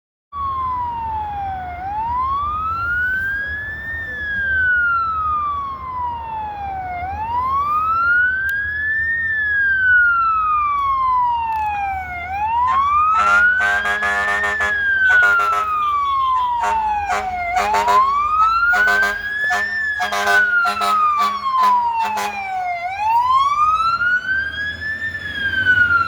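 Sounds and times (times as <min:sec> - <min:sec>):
fire engine siren wailing: 0:00.3 - 0:26.0
harsh blaring horn: 0:12.5 - 0:22.8.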